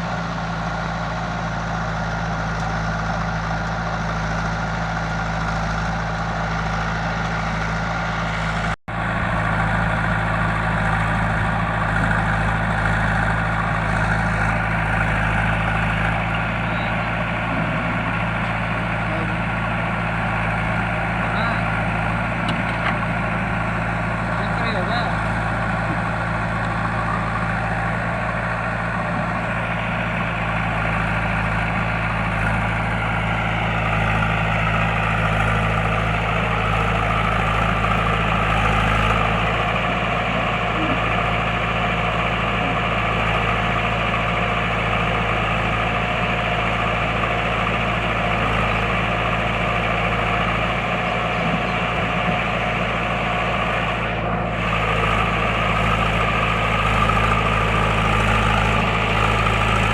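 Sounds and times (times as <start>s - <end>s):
diesel engine running: 0.0s - 59.9s.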